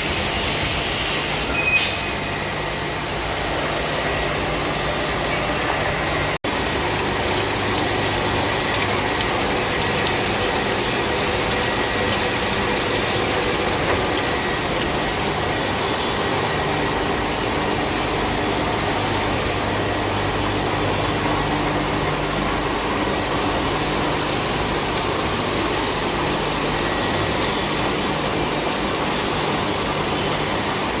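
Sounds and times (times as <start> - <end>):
cnc machine cutting: 8.7 - 21.3.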